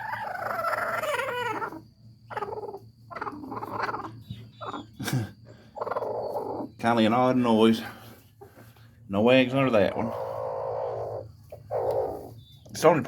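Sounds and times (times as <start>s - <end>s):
hen squawking: 9.5s - 12.4s.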